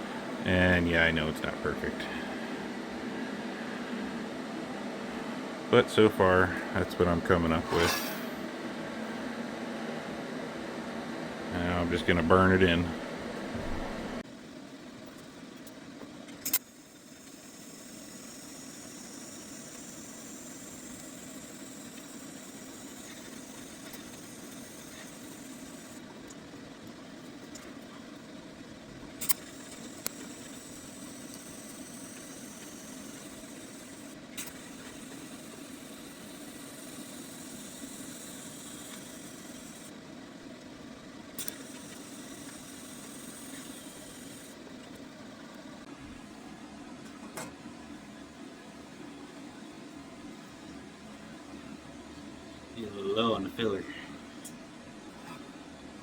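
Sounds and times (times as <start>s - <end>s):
welder buzzing hum: 16.5s - 26.2s, 28.9s - 40.0s, 41.4s - 44.7s
sharp clicks: 41.4s - 44.5s.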